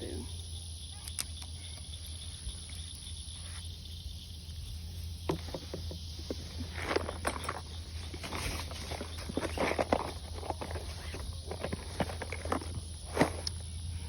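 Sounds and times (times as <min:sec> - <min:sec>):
rustling and crackling: 0:05.2 - 0:13.8.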